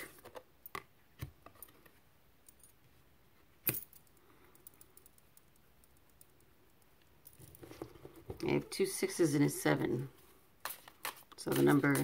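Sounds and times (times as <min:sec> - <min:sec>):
cards being handled: 0:10.6 - 0:12.0.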